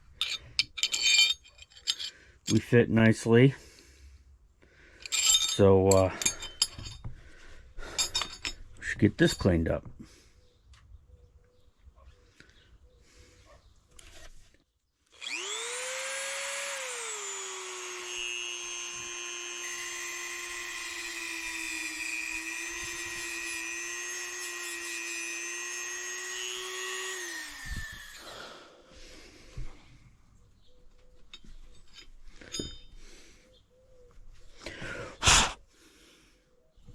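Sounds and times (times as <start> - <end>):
power tool motor whining: 15.1 - 28.6.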